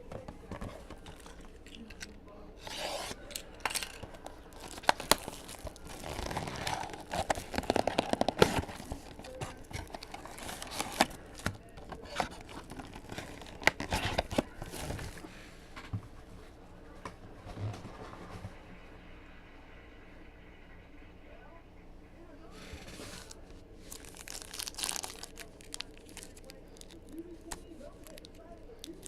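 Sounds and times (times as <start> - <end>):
cards rustling and clicking: 0.0 - 15.3, 22.6 - 29.0
card pack wrappers tearing: 0.4 - 15.2, 22.9 - 29.0.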